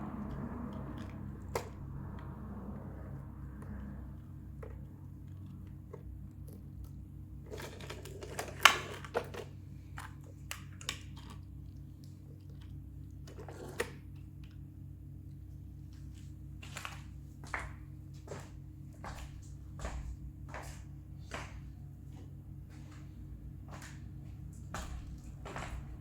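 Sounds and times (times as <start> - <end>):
steady low hum: 0.0 - 26.0
toy car and packaging handled: 7.4 - 11.5.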